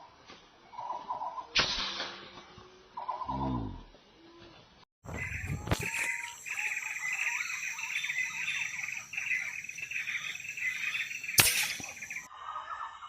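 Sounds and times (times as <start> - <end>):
insects droning: 5.1 - 12.3.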